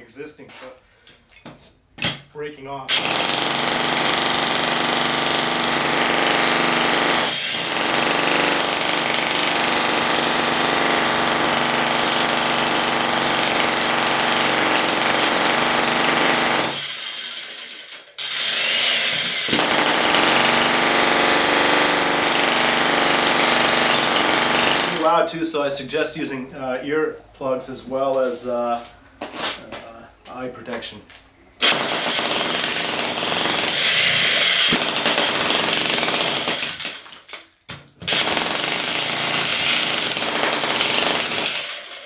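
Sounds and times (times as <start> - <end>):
jackhammer breaking concrete: 2.9 - 25.1, 31.6 - 37.4, 38.0 - 42.0.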